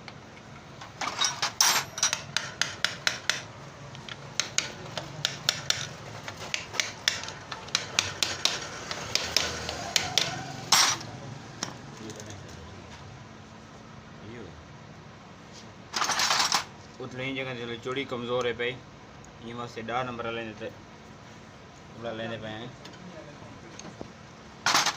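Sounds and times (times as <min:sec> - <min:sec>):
metal tools clicking and clinking: 0:00.8 - 0:11.7, 0:16.0 - 0:16.7, 0:24.6 - 0:24.9.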